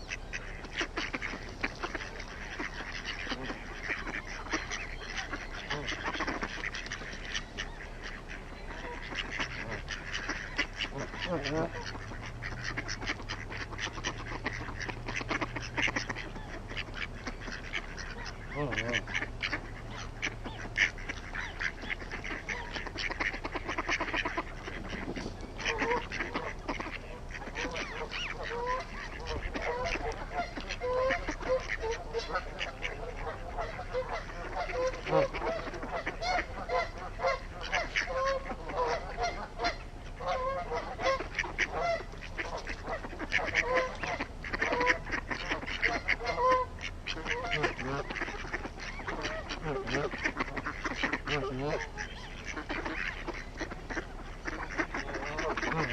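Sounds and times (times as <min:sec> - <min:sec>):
geese honking: 0:00.0 - 0:55.9.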